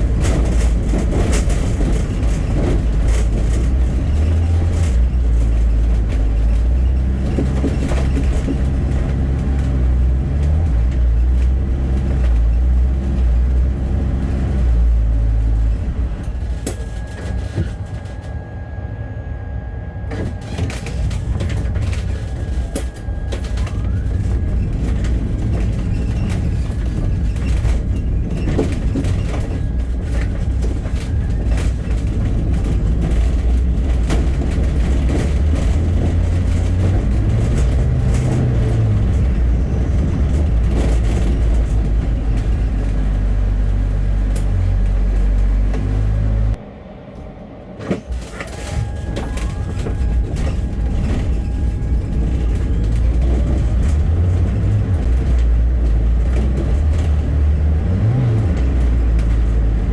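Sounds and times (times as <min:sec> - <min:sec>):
rattles and clicks: 0:00.0 - 0:18.4, 0:20.1 - 0:46.6, 0:47.2 - 0:59.9
bus engine and road rumble: 0:00.0 - 0:59.9.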